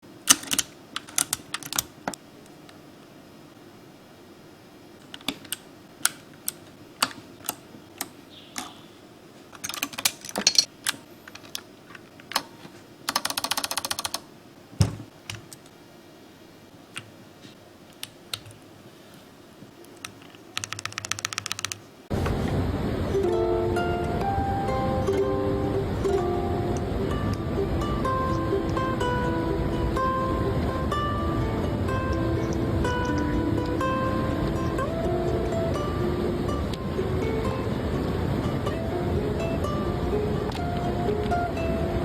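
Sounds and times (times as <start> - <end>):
mechanical keyboard clicks: 13.1 - 14.3, 19.9 - 21.8
plucked ukulele music: 22.3 - 42.0.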